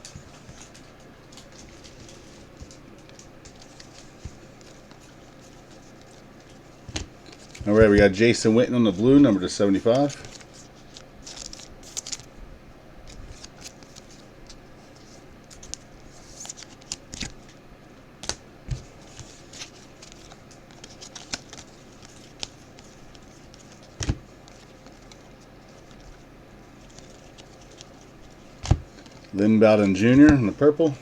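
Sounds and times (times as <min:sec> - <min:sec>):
trading cards flipped through: 0:15.5 - 0:17.6, 0:18.2 - 0:26.2, 0:26.8 - 0:30.6.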